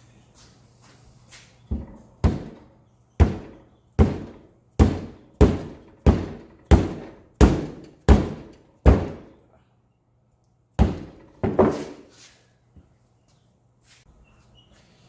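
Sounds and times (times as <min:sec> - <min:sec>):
mallet knocking on metal: 0:03.2 - 0:09.3.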